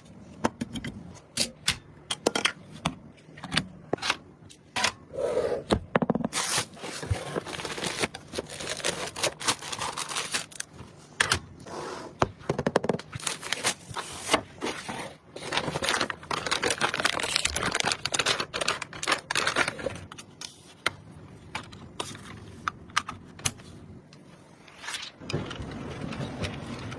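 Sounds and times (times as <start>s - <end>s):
packaging rustling: 6.3s - 11.2s, 13.0s - 20.8s.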